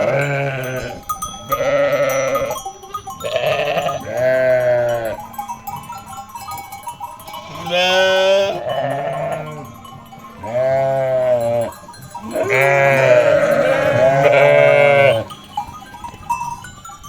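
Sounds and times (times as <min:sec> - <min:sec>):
sheep bleating: 0:00.0 - 0:02.6, 0:03.2 - 0:05.2, 0:07.3 - 0:15.4.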